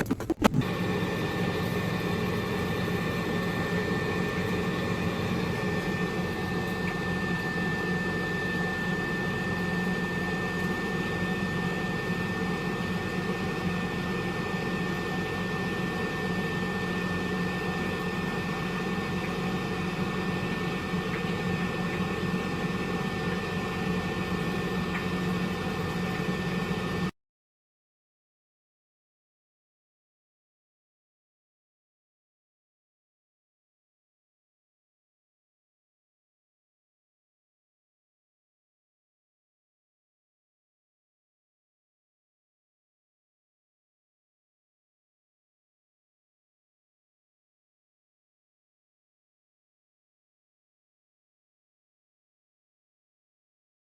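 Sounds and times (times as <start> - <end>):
air fryer fan whirring: 0.0 - 27.1.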